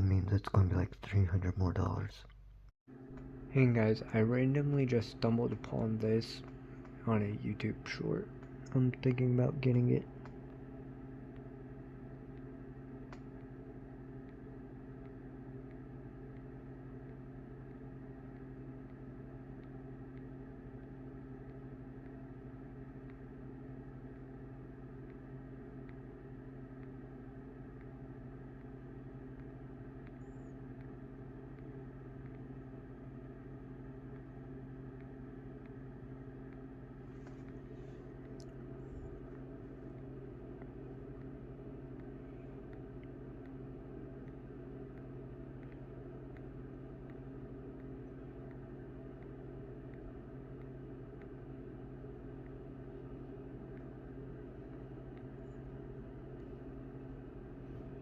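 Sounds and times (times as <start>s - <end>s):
machine humming: 0.0s - 58.0s
faint clicks: 12.2s - 58.0s.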